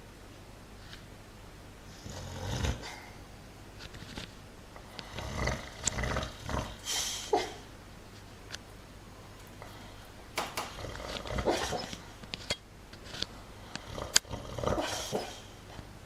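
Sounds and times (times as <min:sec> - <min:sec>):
dog growling in its sleep: 0:01.9 - 0:03.2, 0:04.9 - 0:07.6, 0:10.7 - 0:12.0, 0:13.8 - 0:15.6
sharp clicks: 0:10.4 - 0:10.8.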